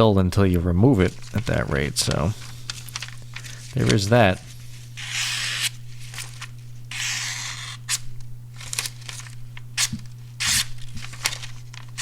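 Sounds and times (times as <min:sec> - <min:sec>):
steady low hum: 0:00.0 - 0:12.0
paper rustling and clicking: 0:01.0 - 0:04.6, 0:05.7 - 0:06.6, 0:07.7 - 0:12.0
knife slicing through paper: 0:02.6 - 0:12.0.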